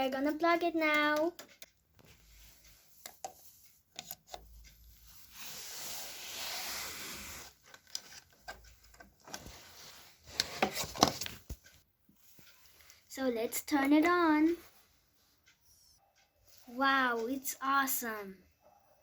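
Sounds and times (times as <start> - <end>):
rubbing and rustling: 1.6 - 13.0.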